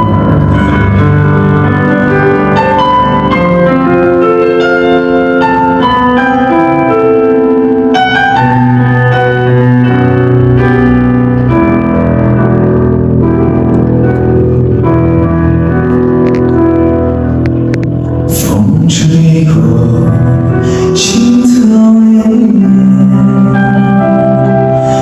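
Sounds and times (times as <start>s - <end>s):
low bass note: 0.0s - 5.1s
keyboard playing slow melody: 0.0s - 25.0s.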